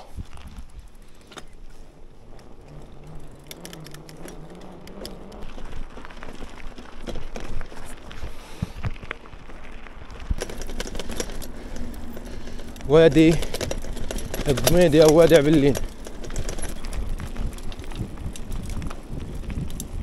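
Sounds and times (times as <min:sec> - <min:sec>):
wind rumble on microphone: 0:00.0 - 0:01.2, 0:13.7 - 0:20.0
bike clicks and rattles: 0:00.0 - 0:20.0.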